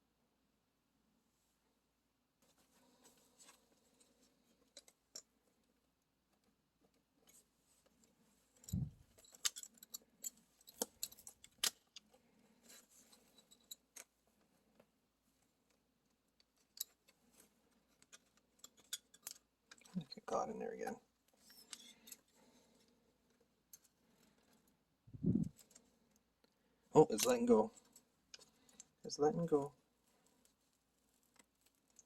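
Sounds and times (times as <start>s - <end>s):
small clicks and metallic taps: 17.9s - 20.0s.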